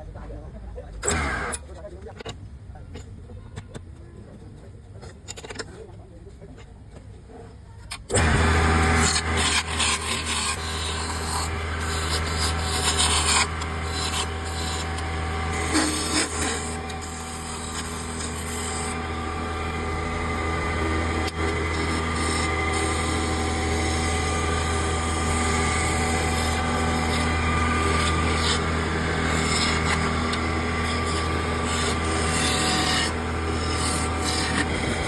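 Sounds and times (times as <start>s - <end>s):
power sander grinding wood: 1.0s - 1.7s, 8.1s - 35.0s
rubbing and scraping on wood: 1.6s - 35.0s.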